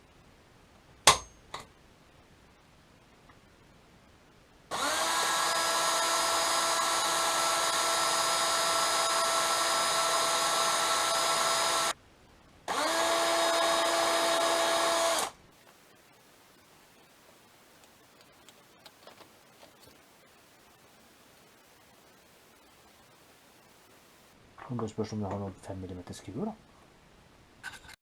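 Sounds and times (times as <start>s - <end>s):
electric drill boring into metal: 4.7s - 12.0s, 12.7s - 15.4s.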